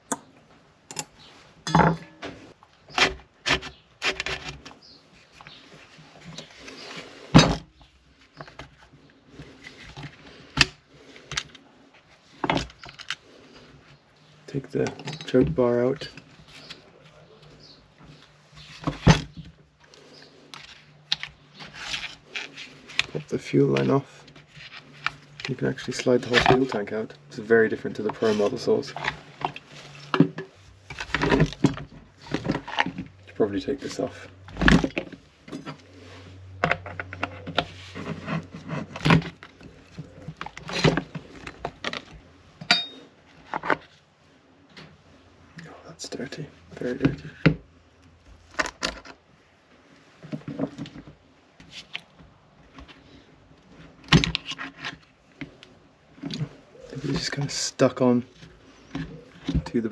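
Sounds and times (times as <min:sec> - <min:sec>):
tools clattering on chainsaw parts: 0:01.7 - 0:02.2.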